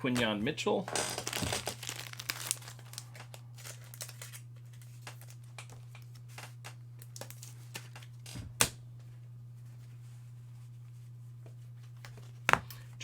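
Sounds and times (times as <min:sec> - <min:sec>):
steady low hum: 0:00.0 - 0:13.0
trading cards being flipped: 0:01.0 - 0:08.0.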